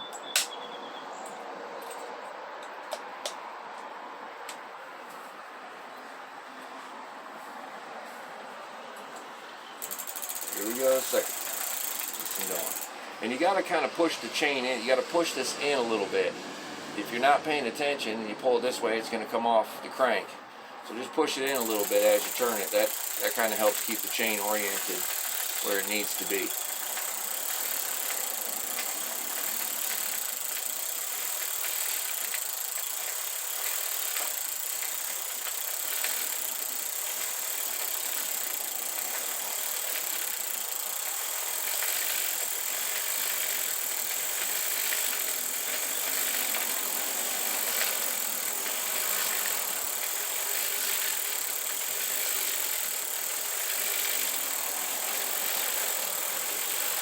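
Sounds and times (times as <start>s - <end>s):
chain running through scrubber: 9.8s - 12.9s, 21.5s - 57.0s.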